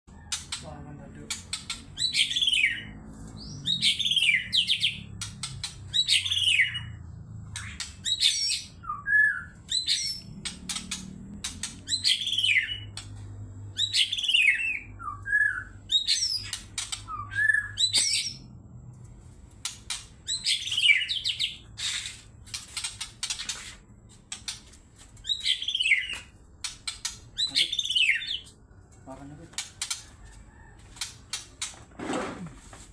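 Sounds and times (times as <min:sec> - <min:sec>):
bird singing whistled notes: 0:02.0 - 0:05.2, 0:05.9 - 0:07.0, 0:07.6 - 0:10.3, 0:11.8 - 0:13.0, 0:13.7 - 0:18.5, 0:20.2 - 0:21.7, 0:25.2 - 0:26.3, 0:27.3 - 0:28.5.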